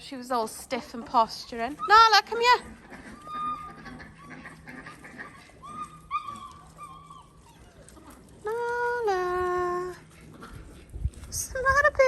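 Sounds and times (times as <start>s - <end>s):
dog whimpering: 1.0s - 8.7s.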